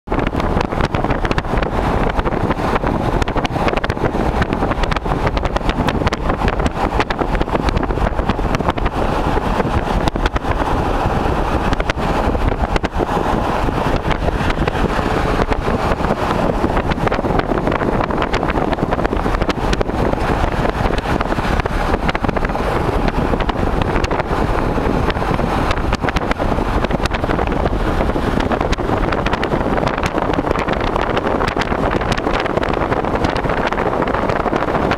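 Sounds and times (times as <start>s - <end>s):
car road and wind noise: 0.0s - 34.9s
wind buffeting microphone: 0.1s - 34.9s.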